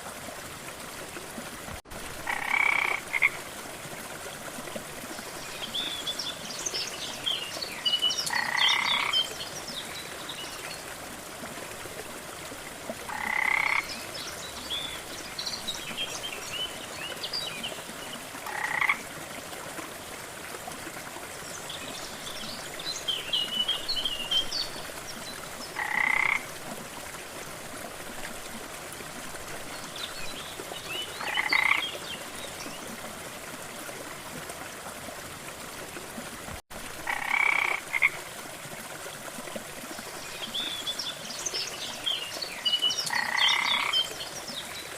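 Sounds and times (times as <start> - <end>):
frogs croaking: 2.2 - 3.4, 8.2 - 9.4, 13.1 - 14.0, 18.4 - 19.1, 25.7 - 26.5, 31.2 - 31.9, 37.0 - 38.2, 43.1 - 44.2.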